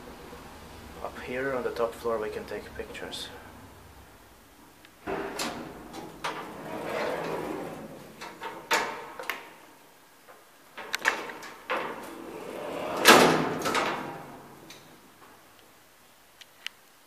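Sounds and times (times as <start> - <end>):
elevator gate sliding rattle: 5.0 - 9.3, 10.7 - 15.0
elevator door banging shut: 5.1 - 9.3, 10.8 - 15.0
metal clicks and knocks: 10.7 - 12.0.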